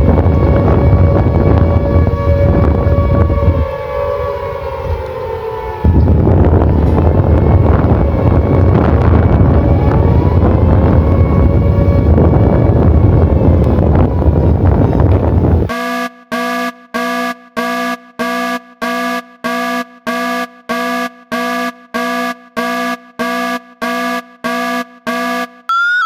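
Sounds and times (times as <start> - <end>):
heavy low rumble: 0.0 - 15.7
wind-like noise: 0.0 - 15.7
emergency alarm siren: 0.0 - 26.0.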